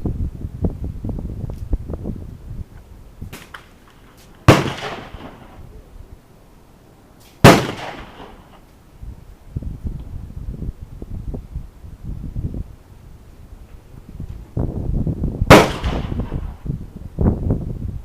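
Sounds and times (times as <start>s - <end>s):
handgun shots with echo: 4.5s - 5.5s, 7.4s - 8.5s, 15.5s - 16.6s
faint distant gunshots: 4.5s - 5.6s, 7.4s - 8.6s, 15.5s - 16.6s.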